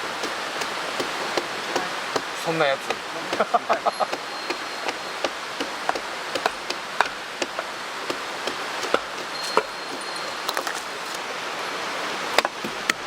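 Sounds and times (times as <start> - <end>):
mountain stream rushing: 0.0 - 13.0
campfire crackling and popping: 0.1 - 11.2.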